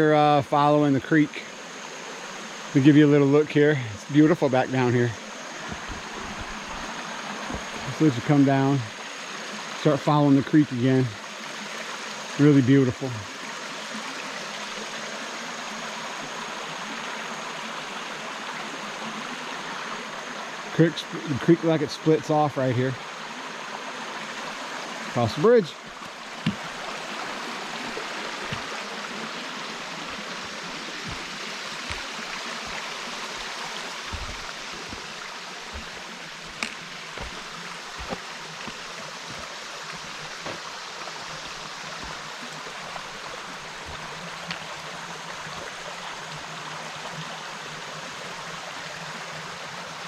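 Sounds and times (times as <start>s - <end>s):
creek water flowing over rocks: 0.0s - 50.0s
soft thumps: 5.6s - 8.0s, 26.0s - 26.9s, 30.5s - 39.5s.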